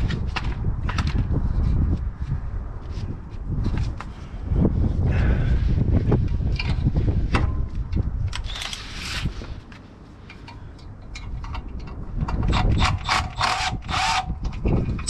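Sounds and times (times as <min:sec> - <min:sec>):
low rumble: 0:00.0 - 0:09.6.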